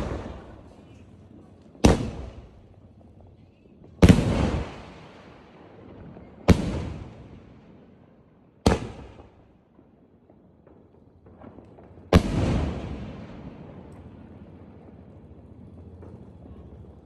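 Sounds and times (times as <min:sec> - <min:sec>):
loud firework bangs: 0:00.0 - 0:00.8, 0:01.7 - 0:02.7, 0:04.0 - 0:07.5, 0:08.6 - 0:09.5, 0:11.2 - 0:16.5.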